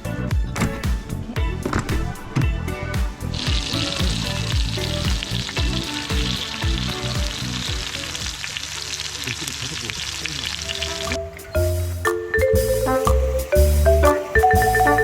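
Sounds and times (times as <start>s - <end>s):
background music with beat: 0.0s - 8.5s, 10.8s - 15.0s
food frying sizzle: 3.4s - 15.0s.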